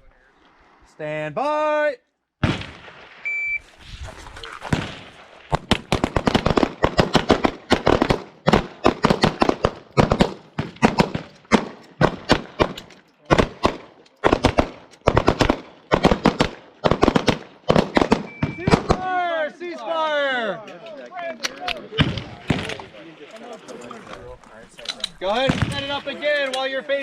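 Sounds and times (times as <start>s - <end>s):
shot timer beep: 3.3s - 3.6s, 18.3s - 18.6s
rapid pistol fire: 4.7s - 19.0s.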